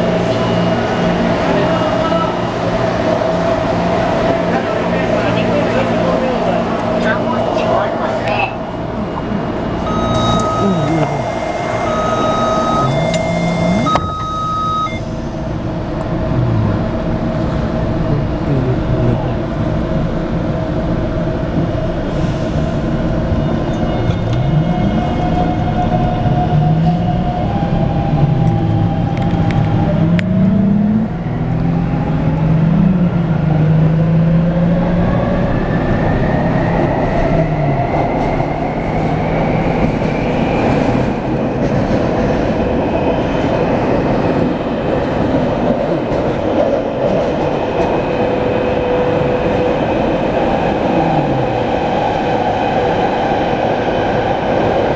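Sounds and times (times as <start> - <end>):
rail noise: 0.0 - 54.9
train inverter whining: 7.8 - 18.0.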